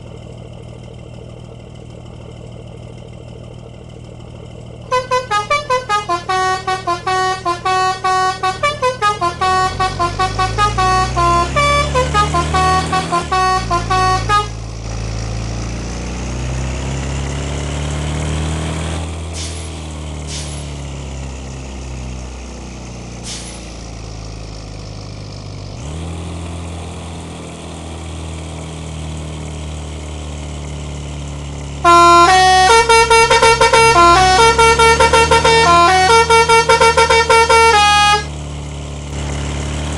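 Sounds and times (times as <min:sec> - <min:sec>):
bus engine running: 0:00.0 - 0:39.9
multi-tone bus horn melody: 0:04.9 - 0:14.7, 0:31.8 - 0:38.4.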